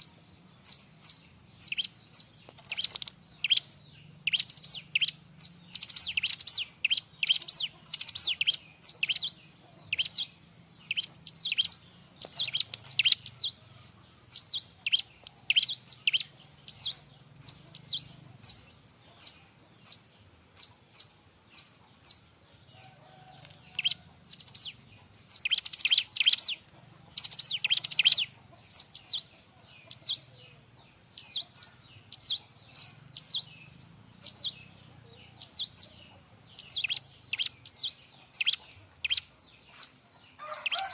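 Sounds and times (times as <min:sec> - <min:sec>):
bird singing sharp chirps: 0:00.0 - 0:13.6, 0:23.8 - 0:26.6, 0:27.2 - 0:29.3, 0:29.9 - 0:40.9.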